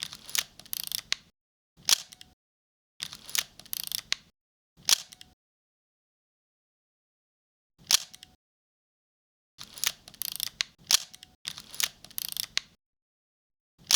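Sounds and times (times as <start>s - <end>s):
camera shutter clicking: 1.8s - 2.2s, 3.1s - 4.1s, 4.8s - 5.3s, 7.9s - 8.3s, 9.6s - 12.6s.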